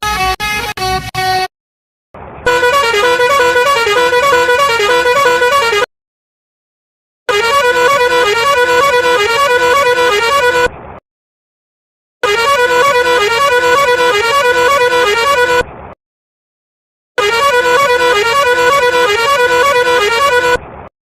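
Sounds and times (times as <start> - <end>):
musical vehicle horn tune: 0.0 - 1.5, 2.4 - 5.9, 7.3 - 10.7, 12.2 - 15.7, 17.2 - 20.6.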